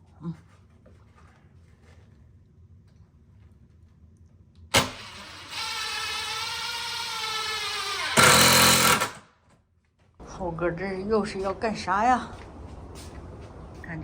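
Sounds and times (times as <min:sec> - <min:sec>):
drill click: 0:04.8 - 0:09.2
electric drill whine: 0:04.8 - 0:09.2.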